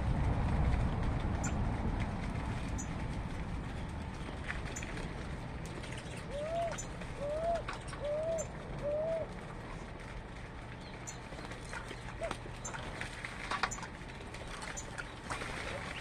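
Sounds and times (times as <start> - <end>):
bird low arched call: 6.2 - 9.3.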